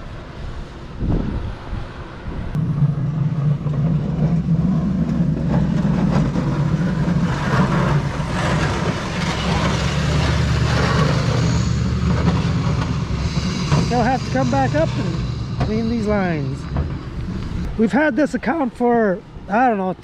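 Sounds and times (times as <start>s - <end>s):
snow plow engine running: 2.6s - 18.0s.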